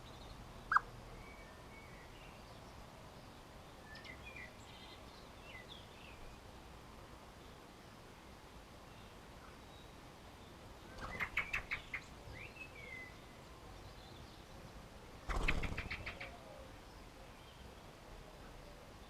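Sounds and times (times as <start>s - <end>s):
faint bird chirps: 0.0s - 2.6s
bird wingbeats: 15.2s - 16.2s.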